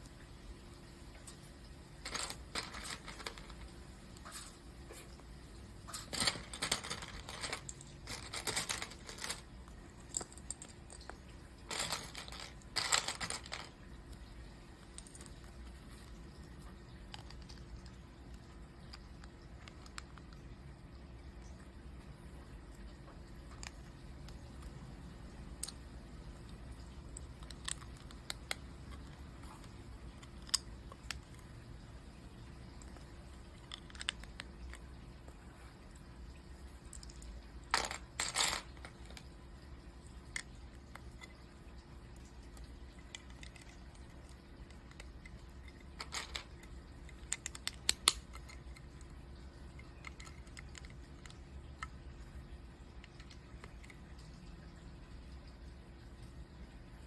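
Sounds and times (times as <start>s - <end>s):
plastic pieces rattling: 1.9s - 4.5s, 5.9s - 16.1s, 17.0s - 20.4s, 27.2s - 31.5s, 32.8s - 34.9s, 36.9s - 39.3s, 42.5s - 49.0s, 49.8s - 52.0s
plastic bricks clicking together: 2.0s - 3.7s, 6.0s - 16.1s, 17.0s - 20.4s, 25.5s - 25.9s, 27.1s - 31.6s, 32.7s - 35.0s, 36.9s - 39.3s, 40.2s - 41.5s, 42.2s - 52.0s.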